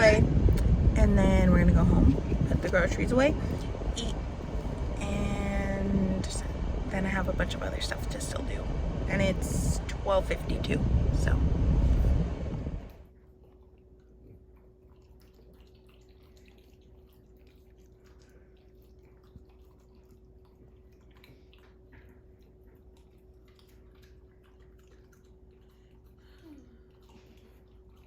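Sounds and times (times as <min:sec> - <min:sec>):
steady low hum: 0:00.0 - 0:15.5.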